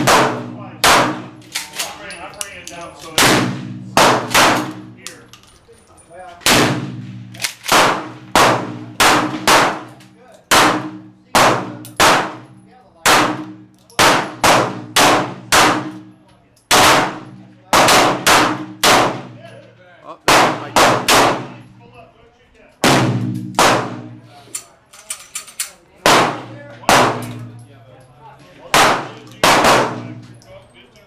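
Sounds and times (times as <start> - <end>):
shotgun blasts with echo: 0.0 - 1.4, 3.2 - 4.8, 6.4 - 9.9, 10.5 - 12.4, 13.1 - 16.0, 16.7 - 19.3, 20.3 - 21.6, 22.8 - 24.2, 26.0 - 27.4, 28.7 - 30.2.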